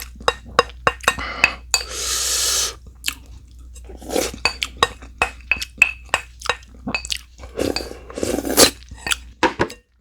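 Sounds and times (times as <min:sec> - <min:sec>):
cutlery clinking against dishes: 0:09.0 - 0:10.0.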